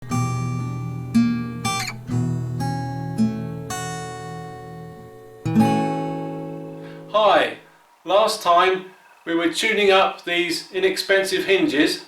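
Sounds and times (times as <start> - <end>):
strummed acoustic guitar chords: 0.0 - 7.7.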